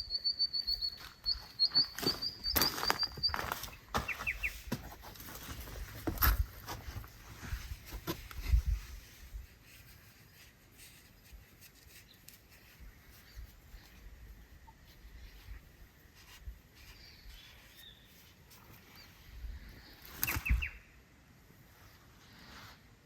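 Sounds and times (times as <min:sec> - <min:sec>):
bird chirping: 0:00.0 - 0:04.7, 0:16.8 - 0:21.0.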